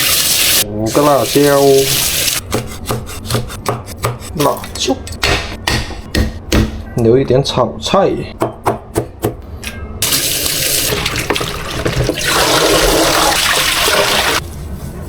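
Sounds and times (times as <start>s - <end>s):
knife on cutting board: 2.5s - 4.9s.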